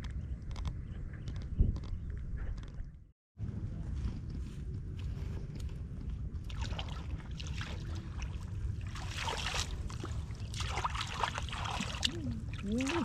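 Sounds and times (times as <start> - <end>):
steady low rumble: 0.0 - 13.0
hands splashing muddy water: 6.5 - 13.0.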